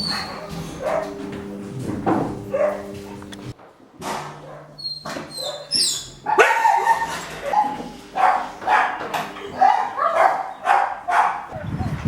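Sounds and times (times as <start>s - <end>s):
dog barking: 0.0s - 1.3s, 2.4s - 3.3s, 4.4s - 11.6s.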